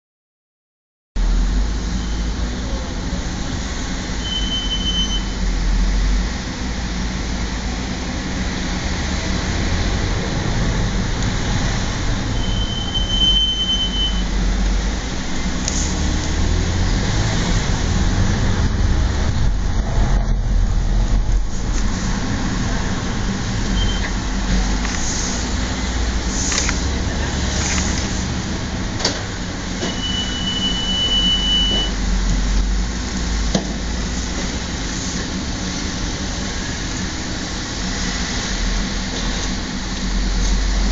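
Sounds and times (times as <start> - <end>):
driving noise: 1.2 - 40.9
brakes squealing: 1.6 - 6.7, 7.8 - 40.9.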